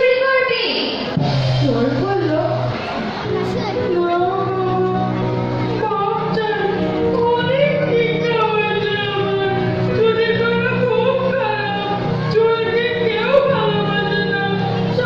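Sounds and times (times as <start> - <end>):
person singing: 3.7 - 15.0.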